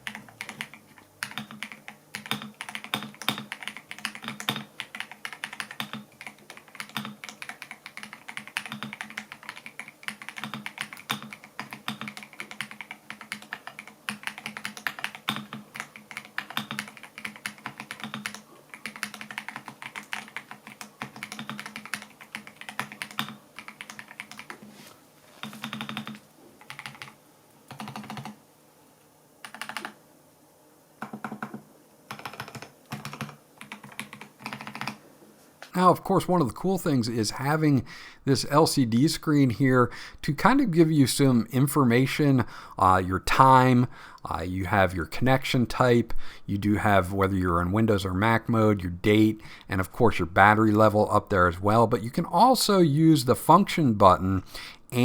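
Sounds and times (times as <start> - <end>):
fast typing on mechanical keyboard: 0.0 - 24.6, 25.4 - 28.4, 29.4 - 30.0, 31.0 - 35.0.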